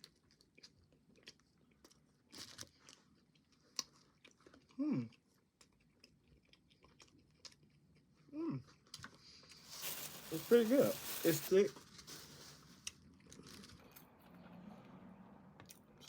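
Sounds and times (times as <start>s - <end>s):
chewing and biting waffle: 0.0s - 9.6s.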